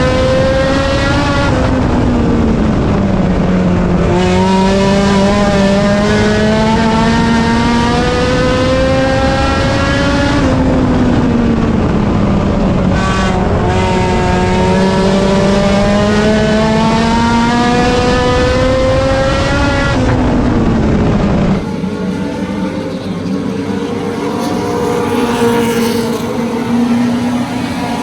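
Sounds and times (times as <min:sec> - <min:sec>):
race car engine revving: 0:00.0 - 0:28.0.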